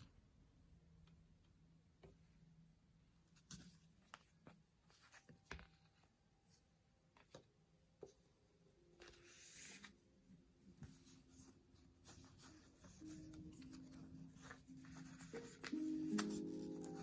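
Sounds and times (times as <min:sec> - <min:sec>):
paper rustling: 0:10.7 - 0:17.0.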